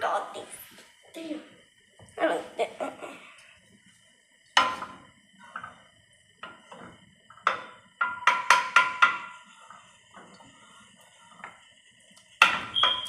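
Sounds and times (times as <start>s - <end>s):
utensil knocking on cooking pan: 4.6s - 5.8s, 6.4s - 10.4s, 12.4s - 13.0s.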